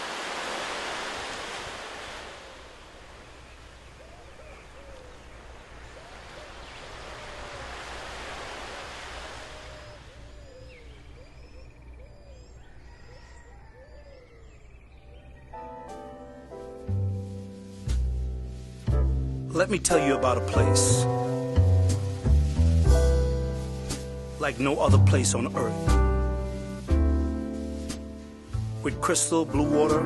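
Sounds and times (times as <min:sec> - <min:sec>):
ocean surf washing onto beach: 0:00.0 - 0:04.0, 0:04.6 - 0:10.4
birds calling and chirping: 0:02.3 - 0:16.6.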